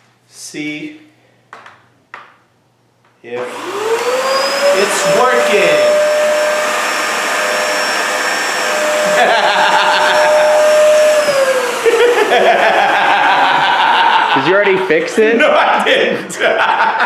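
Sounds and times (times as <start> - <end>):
vacuum cleaner power switch: 3.4 - 14.4
vacuum cleaner motor whine: 3.4 - 14.5.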